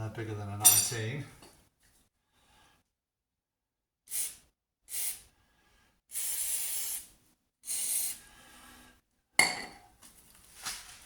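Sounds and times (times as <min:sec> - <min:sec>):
aerosol can spraying: 0:04.1 - 0:05.2, 0:06.1 - 0:07.1, 0:07.7 - 0:08.2.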